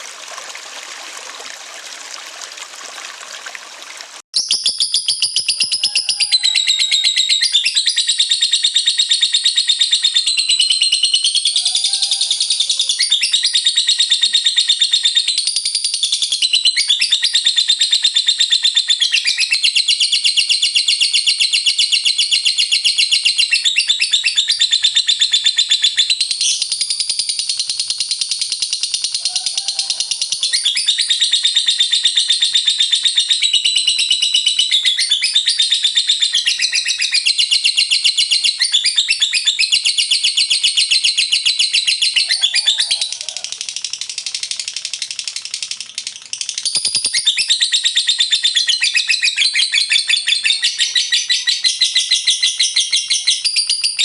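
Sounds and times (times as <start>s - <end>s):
lovebird chattering: 21.4s - 54.0s.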